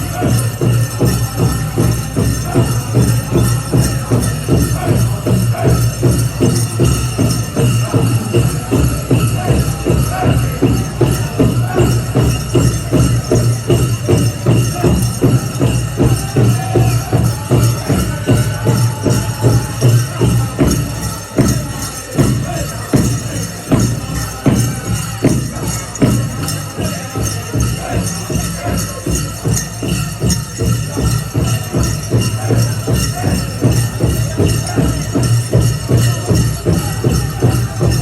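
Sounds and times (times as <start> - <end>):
big drum steady fast beat: 0.0 - 38.0
bright jingling: 0.0 - 38.0.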